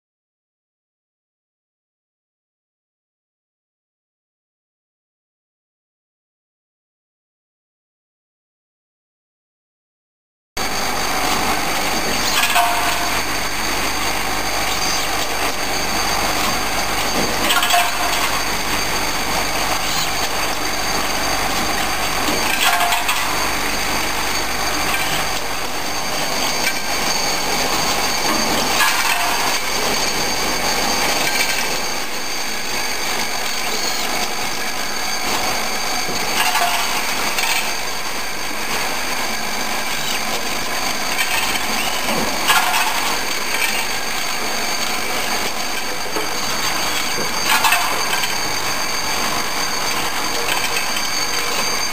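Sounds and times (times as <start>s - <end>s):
cutting and spindle noise: 10.6s - 51.9s
high machine tones: 10.6s - 51.9s
louder machine accent: 10.6s - 51.9s.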